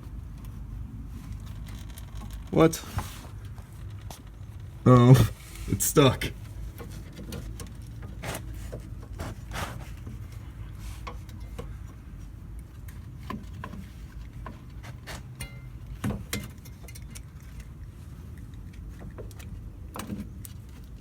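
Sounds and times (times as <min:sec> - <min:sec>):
tools clicking on oil filter: 0:11.0 - 0:21.0.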